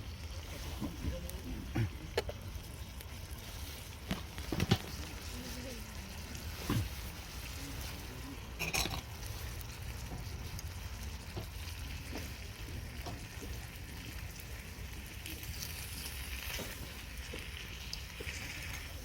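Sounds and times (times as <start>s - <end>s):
faint crackles: 0.0s - 19.0s.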